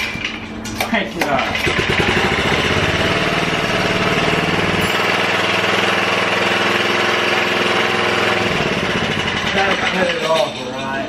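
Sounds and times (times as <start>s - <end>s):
small engine running: 1.5s - 9.9s.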